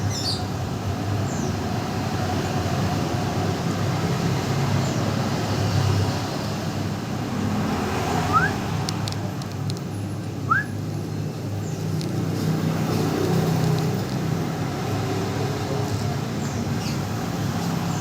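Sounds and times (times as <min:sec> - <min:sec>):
lovebird chirps: 0:08.2 - 0:08.6, 0:10.4 - 0:10.8.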